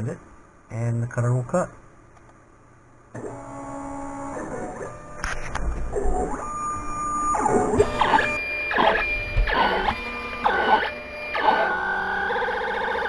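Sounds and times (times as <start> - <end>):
vinyl cutter motors whining: 3.2 - 13.0
steady warbling tone: 5.9 - 13.0.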